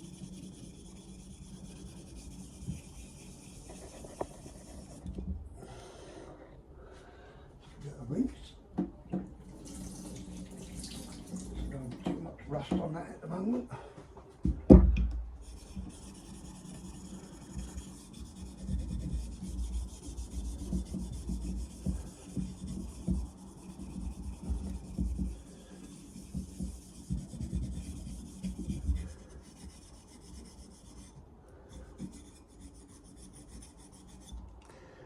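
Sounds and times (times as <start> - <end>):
eraser rasping on steel blade: 0.0 - 5.1, 15.4 - 34.4.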